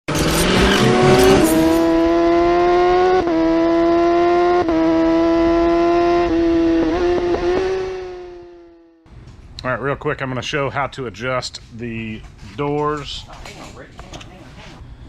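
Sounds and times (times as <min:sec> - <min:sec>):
car engine at high revs: 0:00.0 - 0:09.0.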